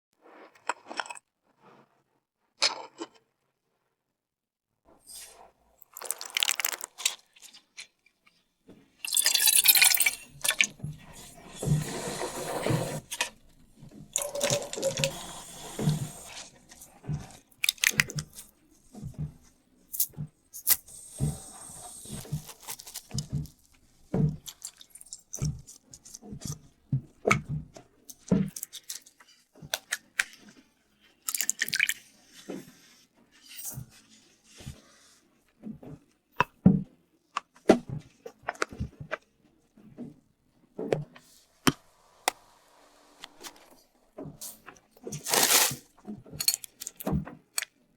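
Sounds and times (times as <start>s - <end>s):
liquid being poured or stirred: 5.8s - 7.8s, 9.0s - 19.3s, 20.0s - 26.2s, 45.0s - 45.8s.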